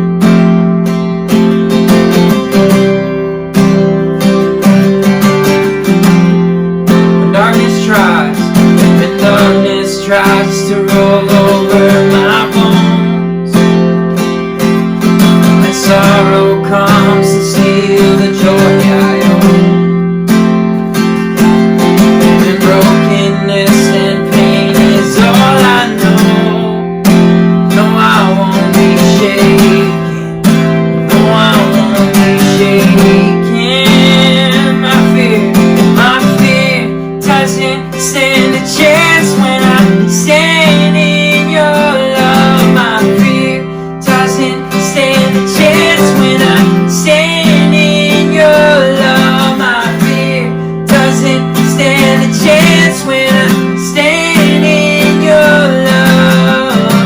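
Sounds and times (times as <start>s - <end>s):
strummed acoustic guitar: 0.0s - 57.0s
person singing: 7.0s - 20.0s, 21.3s - 57.0s.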